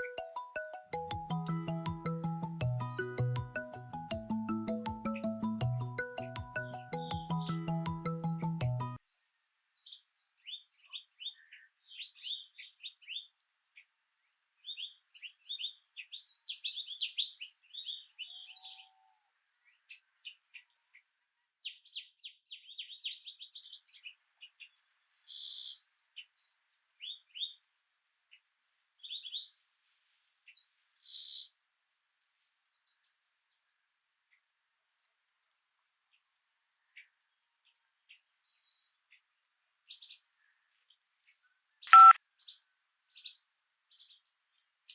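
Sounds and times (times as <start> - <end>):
songbirds chirping and singing: 0.0 - 27.7, 30.5 - 31.6, 32.6 - 33.7, 34.3 - 44.9
faint steady hiss: 27.6 - 32.6.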